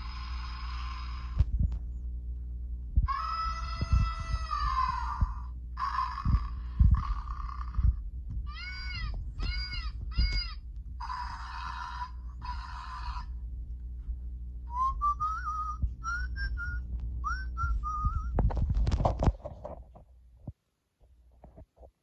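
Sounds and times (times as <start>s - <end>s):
steady low rumble: 0.0s - 21.7s
person whistling: 14.7s - 18.4s.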